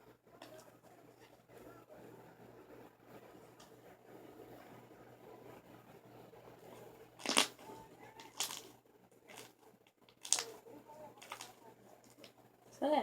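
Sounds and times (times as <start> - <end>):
slime being squished by hand: 7.2 - 7.6, 8.2 - 8.7, 9.3 - 9.5, 10.1 - 10.6, 11.2 - 12.3
slime tearing pops: 7.2 - 7.6, 8.3 - 8.7, 10.1 - 10.6, 11.2 - 11.5.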